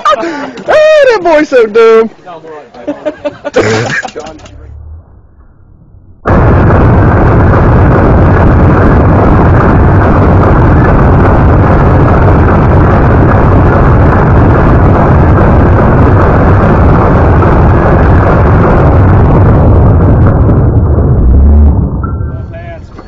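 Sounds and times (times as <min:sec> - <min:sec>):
loud steady rushing noise: 0:06.2 - 0:23.0.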